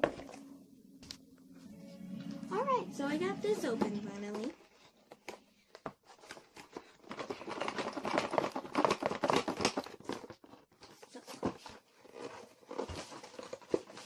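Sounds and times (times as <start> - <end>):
packaging rustling and crinkling: 4.2 - 14.0.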